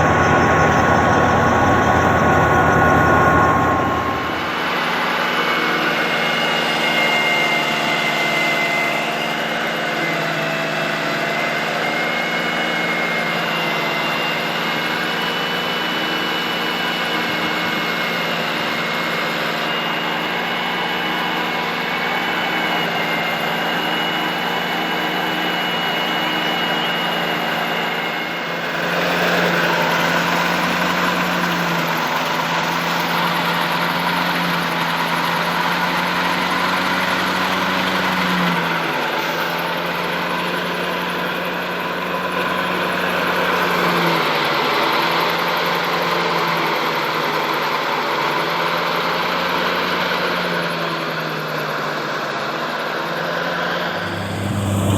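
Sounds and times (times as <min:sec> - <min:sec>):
harvester engine running: 0:00.0 - 0:05.1, 0:53.8 - 0:54.9
faint high whine: 0:00.0 - 0:05.3, 0:53.7 - 0:54.9.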